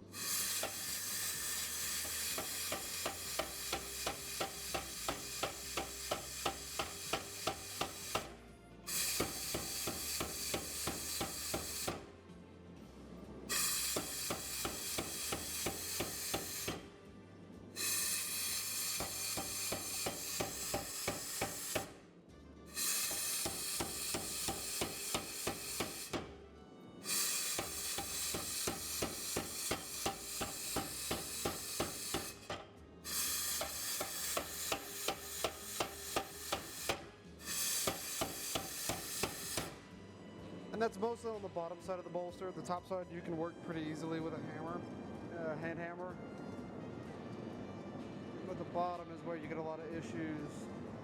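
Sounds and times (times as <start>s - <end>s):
hammer on hot steel on anvil: 0.2s - 12.1s, 13.5s - 16.9s, 17.8s - 22.0s, 22.7s - 26.3s, 27.0s - 39.8s.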